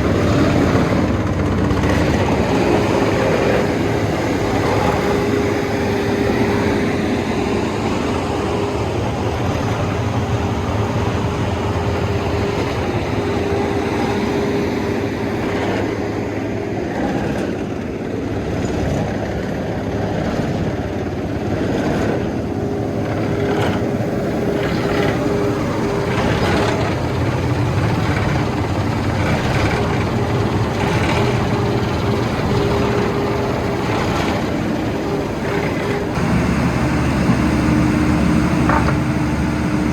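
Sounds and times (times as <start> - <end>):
diesel engine running: 0.0 - 13.9, 22.3 - 39.9
steady whine: 22.4 - 39.9.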